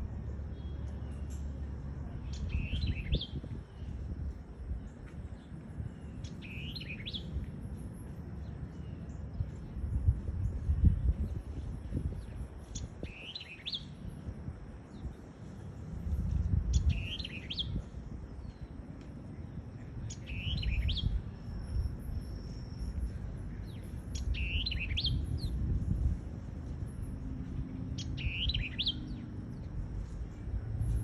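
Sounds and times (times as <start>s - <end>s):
songbird singing: 0.0s - 31.0s.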